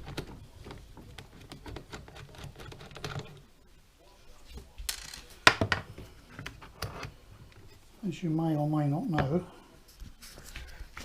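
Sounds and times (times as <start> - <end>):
plastic parts clicking: 0.0 - 3.4.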